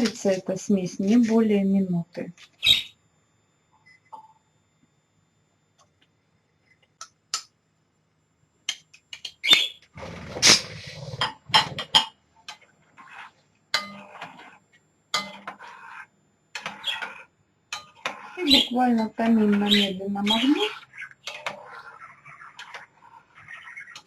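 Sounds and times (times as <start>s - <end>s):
cookware clinking and knocking: 11.2s - 12.6s, 13.8s - 14.0s, 15.2s - 15.6s.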